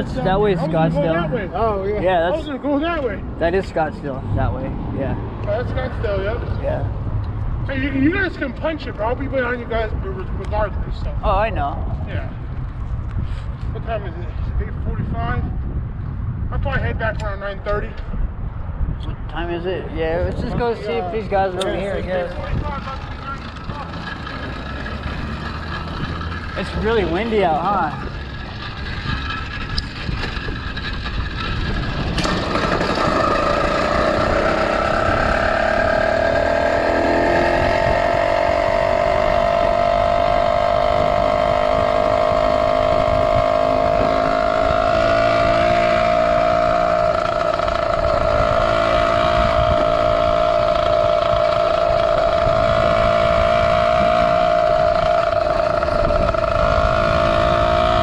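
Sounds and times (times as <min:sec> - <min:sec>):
two-stroke engine droning: 0:00.0 - 0:13.2, 0:20.1 - 0:58.0
wind rumbling on microphone: 0:00.0 - 0:58.0.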